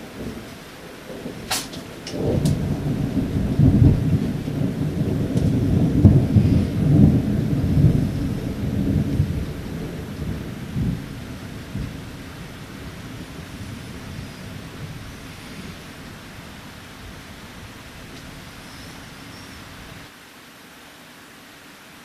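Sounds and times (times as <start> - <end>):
thunder rumbling: 0.0 - 20.1
steady rain: 0.0 - 22.0
sharp clicks: 1.5 - 2.6.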